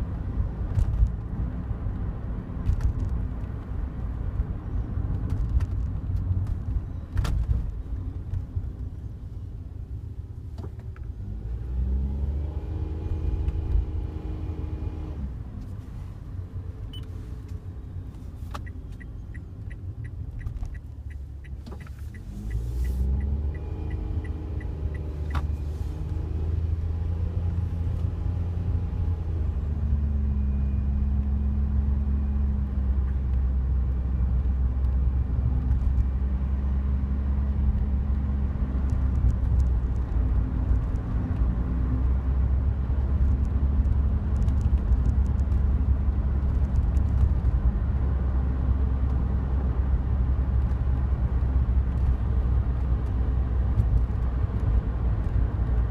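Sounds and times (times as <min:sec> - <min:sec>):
road rumble: 0:00.0 - 0:55.9
engine speeding up: 0:20.8 - 0:32.8.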